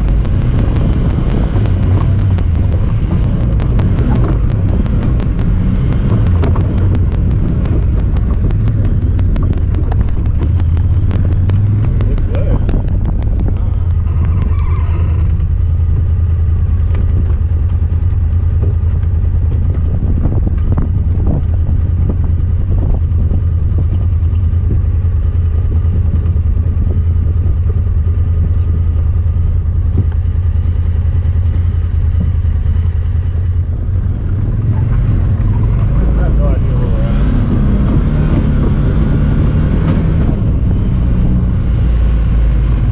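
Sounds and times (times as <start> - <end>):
knocks and clicks: 0.0 - 15.7
engine running steadily: 0.0 - 42.9.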